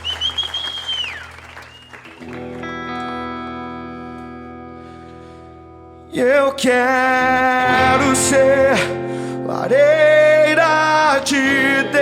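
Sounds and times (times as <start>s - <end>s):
shrill whistle: 0.0s - 2.4s
audience applause: 0.0s - 3.2s
electric guitar chord: 2.5s - 6.1s, 7.3s - 9.7s.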